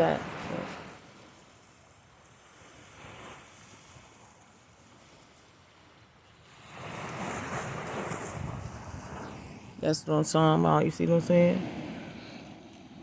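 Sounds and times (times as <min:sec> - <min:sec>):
ocean surf washing ashore: 0:00.0 - 0:13.0
wind on microphone: 0:06.5 - 0:13.0.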